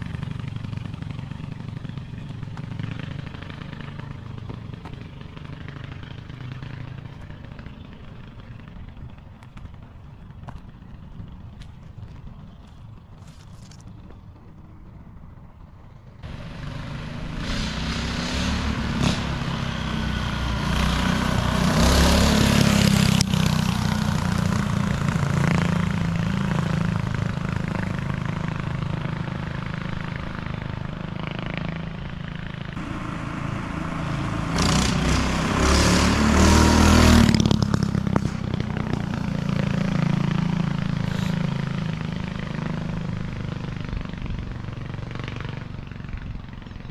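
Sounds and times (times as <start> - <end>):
mini bike engine under throttle: 0.0 - 11.2, 16.2 - 46.9.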